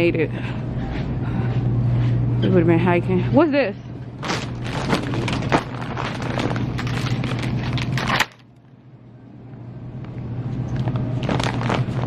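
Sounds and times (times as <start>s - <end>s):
low steady hum: 0.0s - 12.0s
clattering handling noise: 4.2s - 8.5s.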